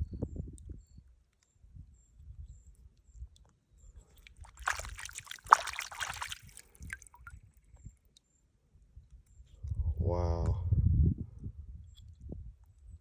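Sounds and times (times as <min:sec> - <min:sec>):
water splashing and sloshing: 0:04.2 - 0:07.3.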